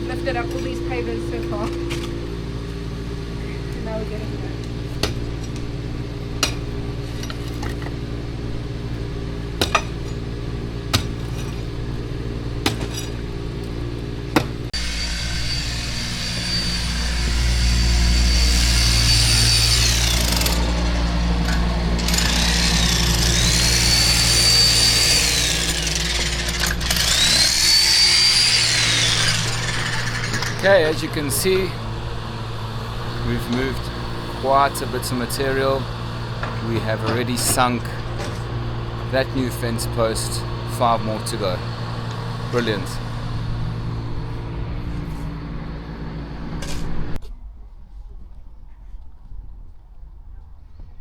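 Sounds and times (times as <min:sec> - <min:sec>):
power tool whining: 0:00.0 - 0:47.2
low engine hum: 0:00.0 - 0:51.0.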